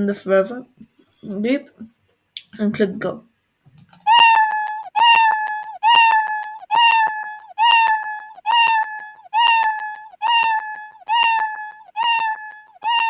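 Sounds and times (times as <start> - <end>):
click: 3.8 - 13.0
cartoon cat meow: 4.1 - 13.0.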